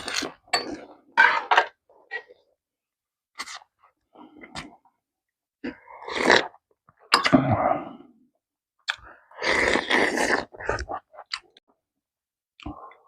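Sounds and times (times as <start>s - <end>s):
person chewing: 8.8s - 11.6s.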